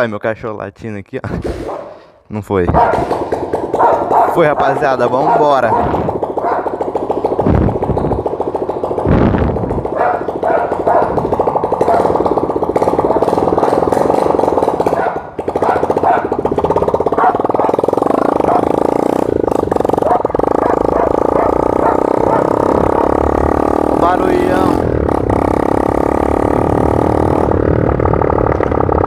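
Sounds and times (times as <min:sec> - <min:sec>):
motorcycle engine without muffler: 0:01.3 - 0:29.0.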